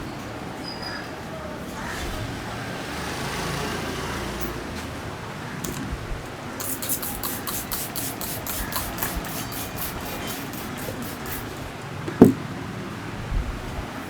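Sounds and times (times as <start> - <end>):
low street traffic hum: 0.0 - 14.0
hand massage slapping strokes: 6.6 - 12.4
sharp thump: 12.1 - 12.4.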